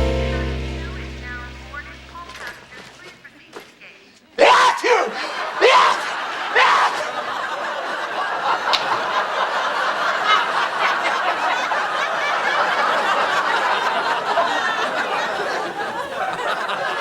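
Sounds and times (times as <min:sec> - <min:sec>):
audience laughing: 0:04.8 - 0:17.0.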